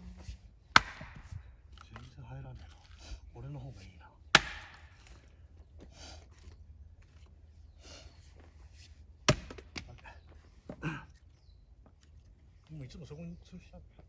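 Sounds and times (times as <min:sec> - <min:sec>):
firewood cracking: 0:00.7 - 0:03.0, 0:04.3 - 0:05.4.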